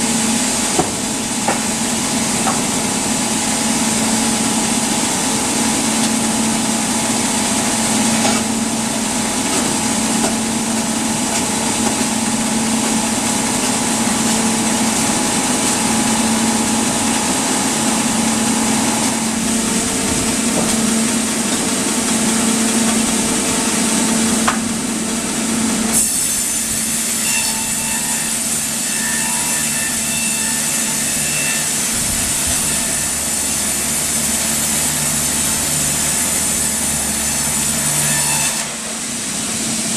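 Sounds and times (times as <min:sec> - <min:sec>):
machine hum: 0:00.0 - 0:28.2
saw cutting through wood: 0:00.0 - 0:39.9.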